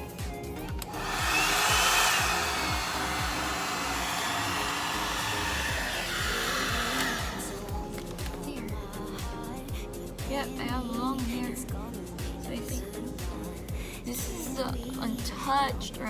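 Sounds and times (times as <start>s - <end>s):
background music with steady beat: 0.0s - 16.0s
hot air brush blowing: 0.8s - 8.4s.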